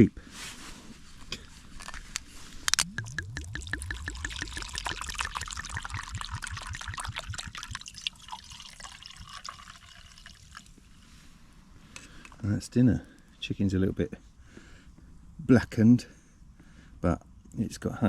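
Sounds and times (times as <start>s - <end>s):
liquid pouring into container: 2.7s - 10.8s.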